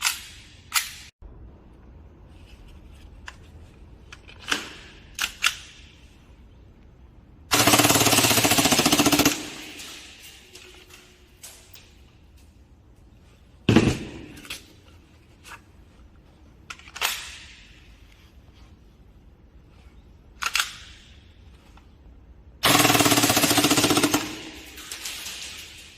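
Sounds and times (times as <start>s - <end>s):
airsoft gun full-auto burst: 7.5s - 9.8s, 22.6s - 24.7s.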